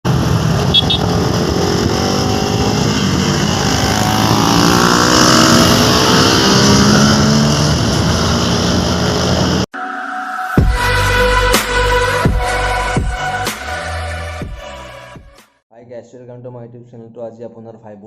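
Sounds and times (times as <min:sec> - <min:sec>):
motorcycle engine revving: 0:00.1 - 0:09.7
wind rushing: 0:00.1 - 0:09.7
electronic music with heavy beat: 0:09.8 - 0:15.4.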